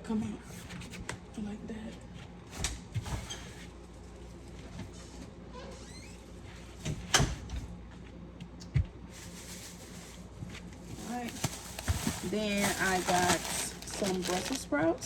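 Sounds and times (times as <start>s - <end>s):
low steady hum: 3.8s - 15.0s
groceries knocking when set down: 10.9s - 14.7s.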